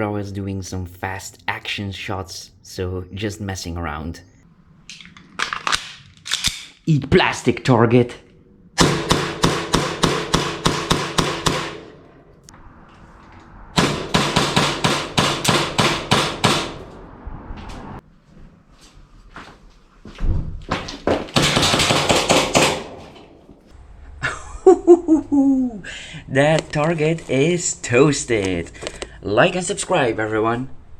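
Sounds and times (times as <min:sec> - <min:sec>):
airsoft pistol shots: 0:08.8 - 0:12.0, 0:21.4 - 0:23.1.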